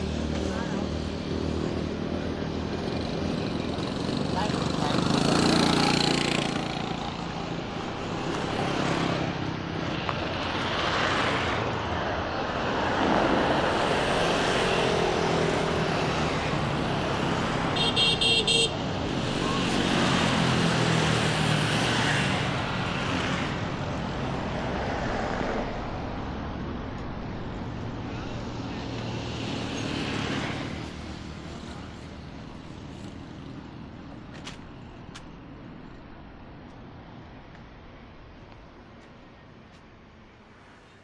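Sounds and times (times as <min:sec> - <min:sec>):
road traffic passing: 0:00.0 - 0:41.0
vehicle horn short beeps: 0:17.8 - 0:18.7.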